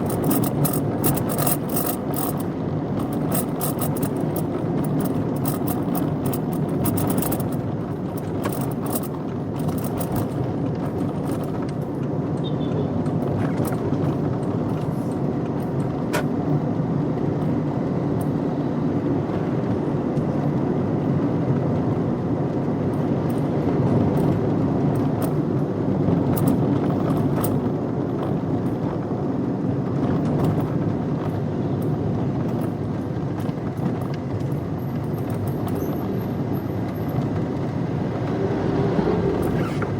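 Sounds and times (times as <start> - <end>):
light clicks and rattles: 0.0 - 12.2
car engine and road noise: 0.0 - 39.9.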